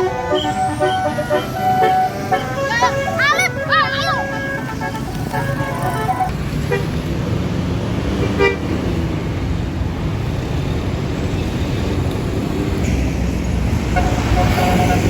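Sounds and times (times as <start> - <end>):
bus horn toot: 0.0 - 7.1, 8.1 - 8.8, 13.8 - 15.0
bus engine rumbling: 0.0 - 15.0.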